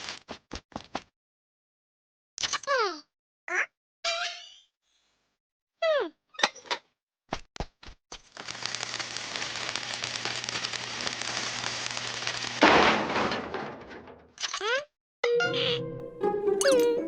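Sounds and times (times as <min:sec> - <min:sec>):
crackling hiss: 0:08.4 - 0:12.6.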